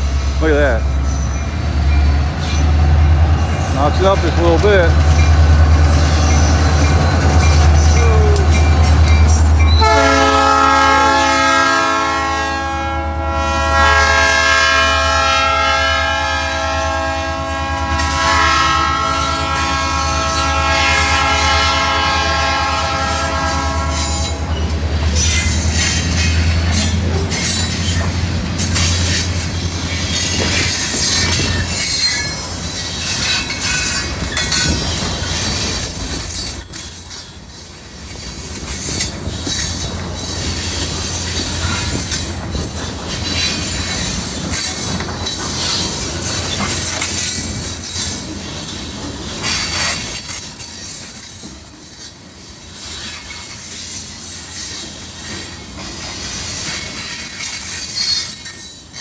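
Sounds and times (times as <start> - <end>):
train wheels squealing: 0.0 - 10.0, 23.8 - 59.0
train wheels clattering: 0.0 - 12.1, 17.6 - 59.0
locomotive engine rumble: 0.0 - 15.4, 16.9 - 50.6
locomotive air horn: 9.8 - 24.5.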